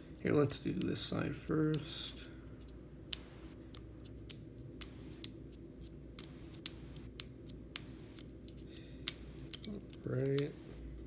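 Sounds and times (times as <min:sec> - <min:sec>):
low steady hum: 0:00.0 - 0:11.0
small tools clicking on phone: 0:02.6 - 0:05.4, 0:06.2 - 0:10.6.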